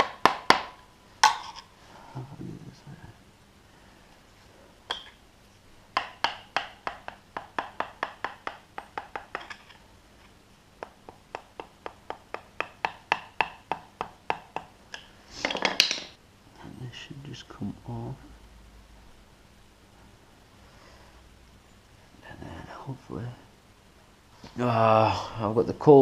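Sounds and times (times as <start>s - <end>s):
hammer tapping metal: 6.0s - 9.6s, 10.8s - 15.1s.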